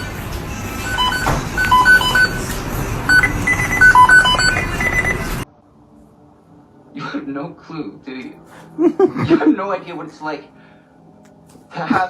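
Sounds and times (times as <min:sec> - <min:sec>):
beeping electronic music: 0:00.0 - 0:05.4.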